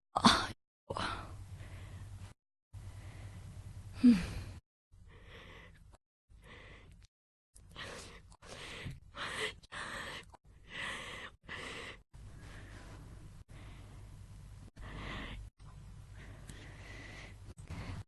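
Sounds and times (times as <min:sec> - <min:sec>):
woman breathing in and out: 0:00.9 - 0:14.1, 0:14.7 - 0:18.0
woman gasping: 0:04.0 - 0:04.6.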